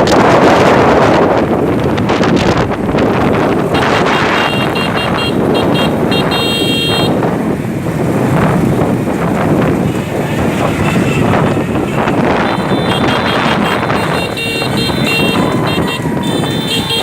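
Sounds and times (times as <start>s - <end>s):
street din: 0.0s - 17.0s
wind noise on microphone: 0.0s - 17.0s
vehicle horn honking: 3.7s - 7.2s, 10.7s - 17.0s.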